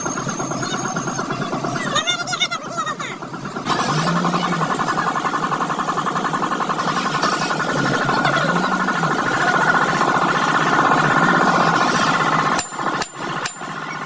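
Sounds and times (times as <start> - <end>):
engine running: 0.0 - 14.0
wavering sounds: 0.0 - 14.0.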